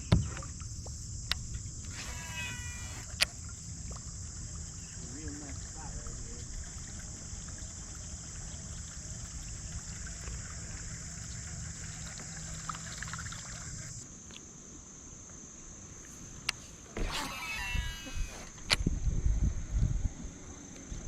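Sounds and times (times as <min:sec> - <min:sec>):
steady high hiss: 0:00.0 - 0:20.7
water trickling: 0:00.2 - 0:14.0.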